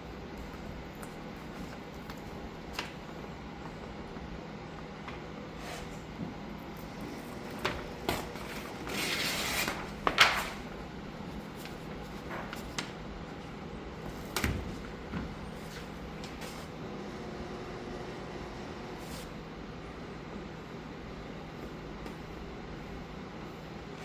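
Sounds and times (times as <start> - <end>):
rustling scrape: 8.3 - 10.6.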